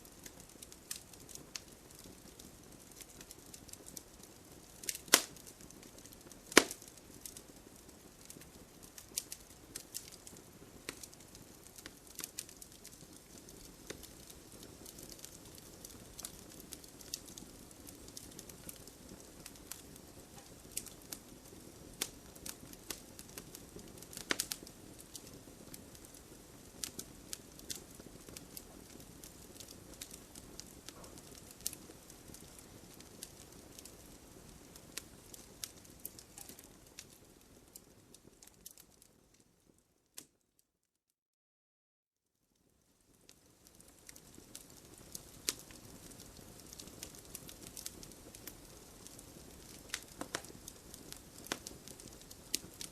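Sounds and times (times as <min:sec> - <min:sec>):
logs crackling and popping: 0:00.0 - 0:40.3, 0:43.0 - 0:52.9
soft rush of flame: 0:43.0 - 0:52.9.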